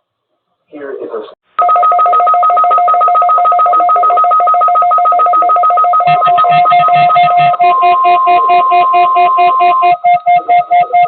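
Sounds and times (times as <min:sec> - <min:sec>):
steady high tone: 0:05.2 - 0:11.0
pulsing electronic music: 0:06.1 - 0:07.6
low beat: 0:06.1 - 0:11.0.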